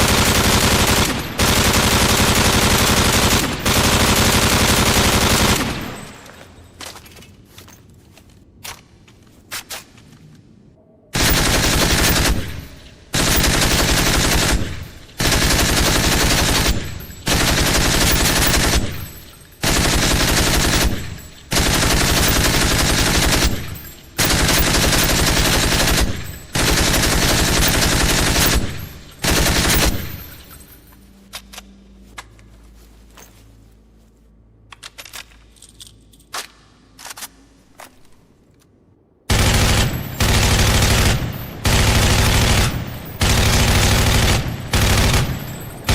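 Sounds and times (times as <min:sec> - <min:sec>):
automatic gunfire bursts: 0:00.0 - 0:06.0, 0:11.2 - 0:19.0, 0:19.6 - 0:30.2, 0:39.3 - 0:45.9.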